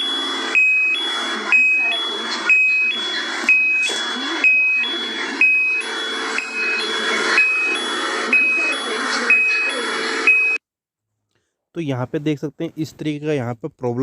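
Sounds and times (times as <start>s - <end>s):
two-tone buzzer beeping: 0.0s - 10.6s.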